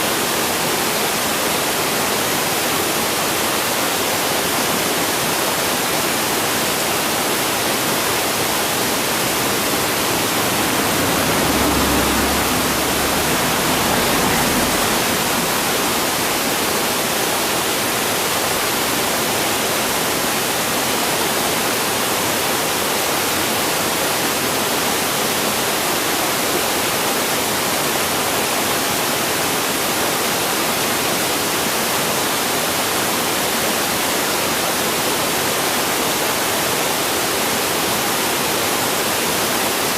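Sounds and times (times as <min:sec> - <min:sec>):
river water rushing: 0:00.0 - 0:39.9
low rumble: 0:08.4 - 0:16.9.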